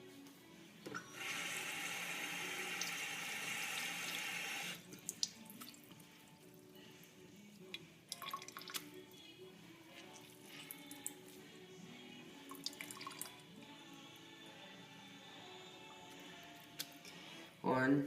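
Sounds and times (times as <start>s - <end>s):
tap water running into sink: 0.9s - 4.8s
water dripping: 4.9s - 6.0s, 7.7s - 8.9s, 12.5s - 13.4s.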